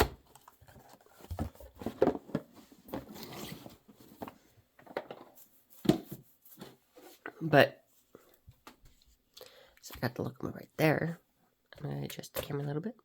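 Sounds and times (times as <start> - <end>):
packaging rustling and scraping: 0.2 - 7.3.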